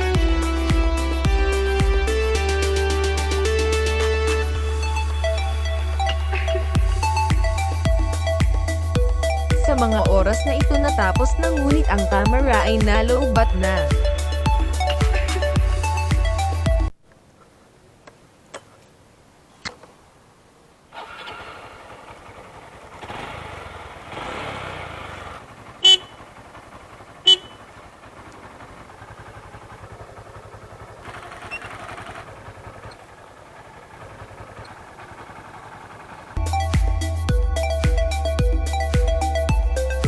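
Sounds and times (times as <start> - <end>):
motorcycle engine running: 0.0 - 16.9, 21.0 - 40.0
motorcycle horn toots: 25.5 - 28.8.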